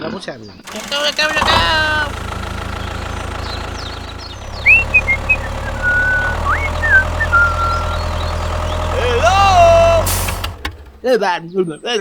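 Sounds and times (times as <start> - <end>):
tractor engine drone: 0.7 - 11.2
high chirps and whistles: 3.9 - 8.8.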